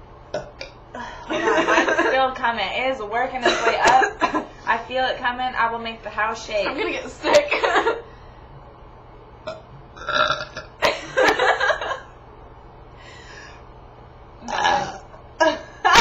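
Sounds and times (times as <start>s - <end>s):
person belching: 0.3s - 0.8s, 9.5s - 10.8s, 14.4s - 15.2s.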